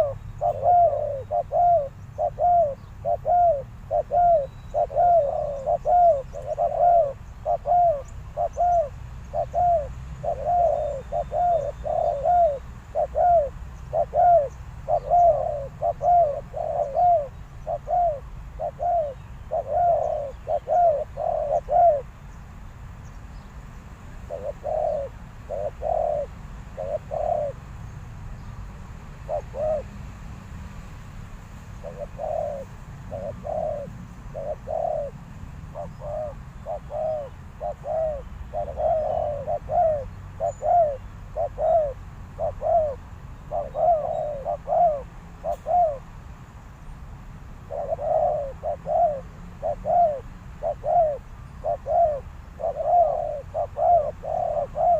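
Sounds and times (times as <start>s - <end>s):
dove cooing: 0.0s - 22.2s, 24.2s - 27.6s, 29.2s - 29.9s, 31.8s - 46.1s, 47.6s - 54.9s.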